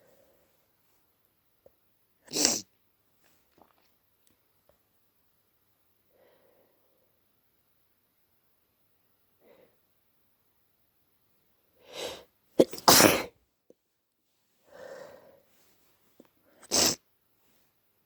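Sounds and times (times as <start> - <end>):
man sneezing: 12.6 - 13.3
drawn-in breath: 14.7 - 15.7.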